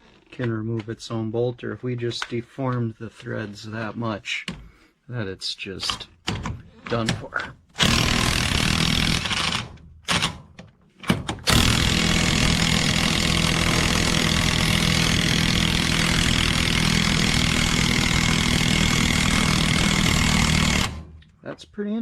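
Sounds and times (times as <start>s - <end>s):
impact wrench hammering: 6.2s - 21.2s.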